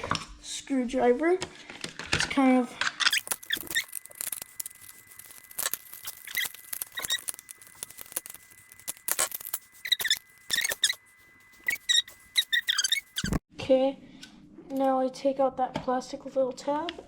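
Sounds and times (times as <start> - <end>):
screwdriver squeaking on screw: 3.0 - 13.4.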